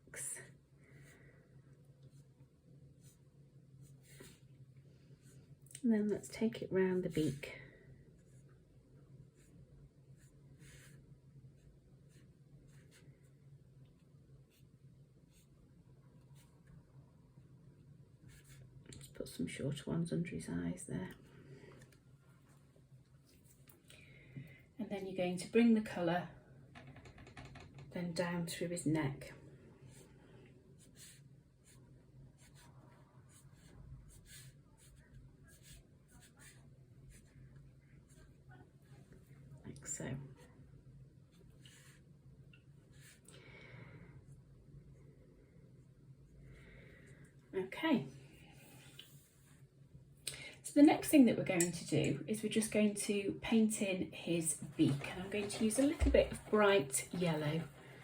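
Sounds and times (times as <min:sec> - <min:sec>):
low steady hum: 0:00.0 - 0:58.0
brush strokes on paper: 0:03.8 - 0:04.5, 0:09.3 - 0:11.1, 0:30.8 - 0:31.8, 0:32.4 - 0:37.4, 0:41.6 - 0:42.1.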